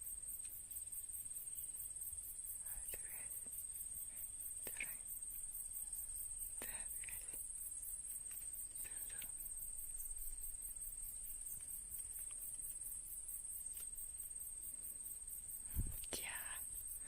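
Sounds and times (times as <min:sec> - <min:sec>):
insects trilling: 0:00.0 - 0:17.0
faint low rumble: 0:15.3 - 0:17.0.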